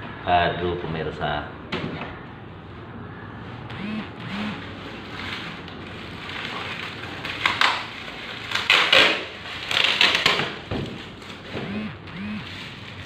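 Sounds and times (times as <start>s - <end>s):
cardboard and plastic crinkling: 5.0s - 11.6s.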